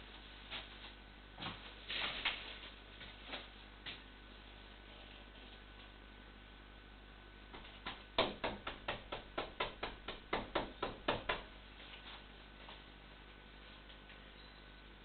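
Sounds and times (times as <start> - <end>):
knocking on a door: 7.9 - 11.5.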